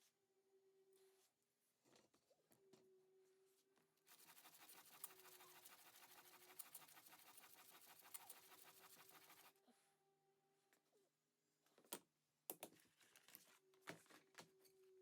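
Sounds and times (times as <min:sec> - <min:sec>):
plane blade rasping: 0:04.1 - 0:09.5.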